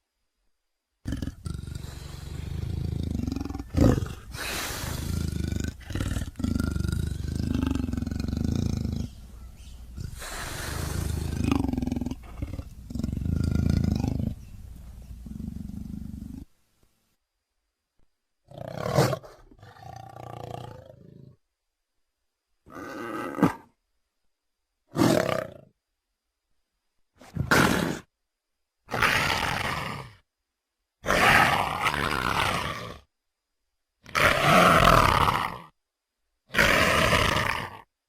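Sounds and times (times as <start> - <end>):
creature growling roars: 1.1 - 9.1, 10.0 - 14.4, 28.9 - 30.2, 31.0 - 33.0, 34.1 - 35.7, 36.5 - 37.9
breathy hissing: 1.1 - 16.4.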